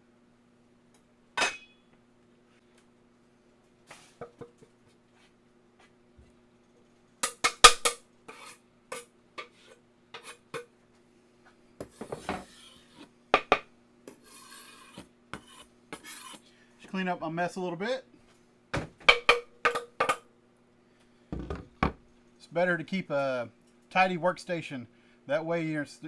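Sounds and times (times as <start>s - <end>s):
faint steady hum: 0.0s - 26.0s
scraping and rubbing: 8.3s - 10.6s, 11.8s - 13.1s, 14.1s - 16.4s.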